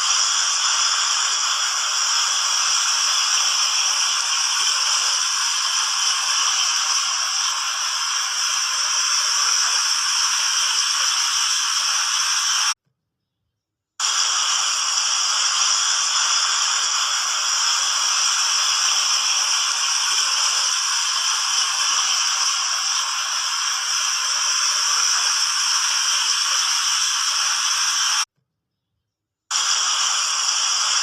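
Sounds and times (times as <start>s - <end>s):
fountain water splashing: 0.0s - 12.8s, 14.3s - 28.2s.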